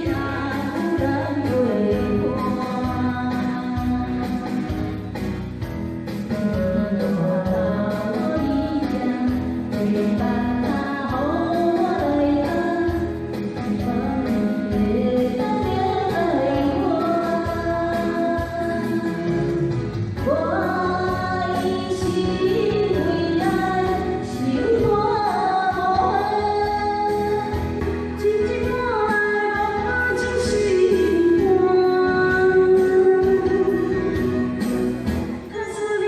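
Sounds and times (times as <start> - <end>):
women singing: 0.0 - 4.8, 6.6 - 19.6, 20.2 - 34.9
instrumental accompaniment: 0.0 - 36.0.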